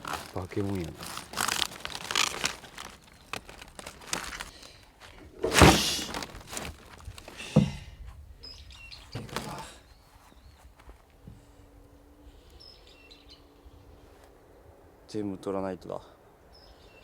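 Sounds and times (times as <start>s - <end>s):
cabbage leaves tearing and crunching: 0.0s - 4.8s, 5.4s - 7.6s
heavy thump: 5.4s - 7.9s.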